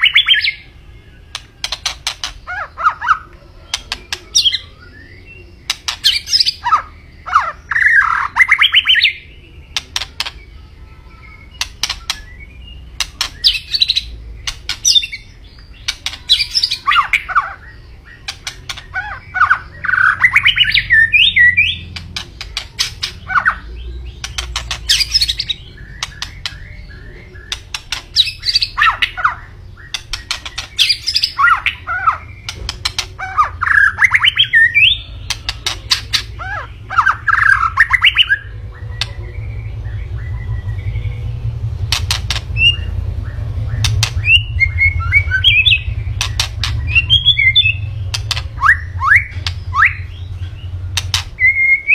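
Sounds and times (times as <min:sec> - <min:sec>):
bird singing clicks and whistles: 0:01.3 - 0:02.5, 0:09.7 - 0:10.4, 0:11.6 - 0:12.4, 0:13.0 - 0:15.2, 0:24.2 - 0:26.8, 0:27.4 - 0:31.8, 0:41.9 - 0:42.8, 0:43.8 - 0:44.5, 0:45.1 - 0:50.0, 0:50.9 - 0:51.9.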